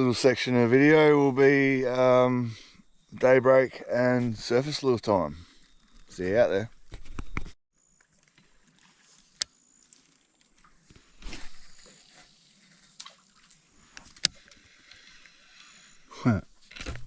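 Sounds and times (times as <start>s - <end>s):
water noise: 7.9s - 16.2s.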